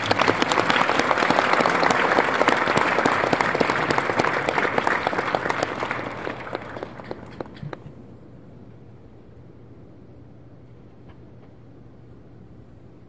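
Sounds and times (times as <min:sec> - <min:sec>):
audience applauding: 0:00.0 - 0:07.9.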